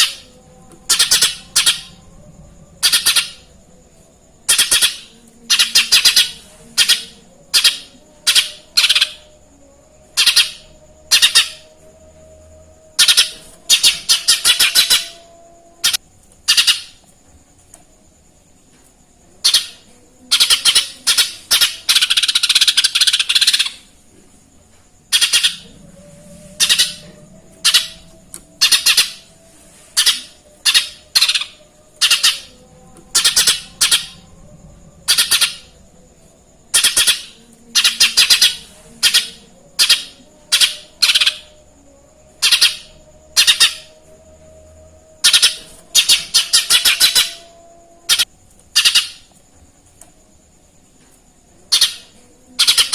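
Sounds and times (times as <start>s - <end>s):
bird chirping and chattering: 0.0s - 2.0s, 2.8s - 3.5s, 4.5s - 9.3s, 10.1s - 11.7s, 13.0s - 15.2s, 15.8s - 17.0s, 19.4s - 23.9s, 25.1s - 25.8s, 26.6s - 29.2s, 29.9s - 32.5s, 33.1s - 34.2s, 35.0s - 35.7s, 36.7s - 41.5s, 48.1s - 49.3s, 51.7s - 52.9s.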